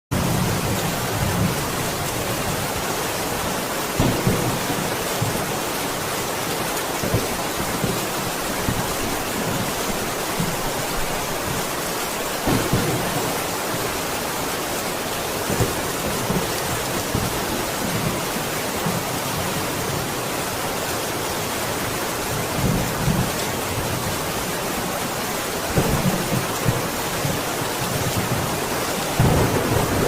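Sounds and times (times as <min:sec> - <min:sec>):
heavy rain on a roof: 0:00.1 - 0:30.0
thunder rumbling: 0:12.4 - 0:13.9, 0:25.7 - 0:30.0.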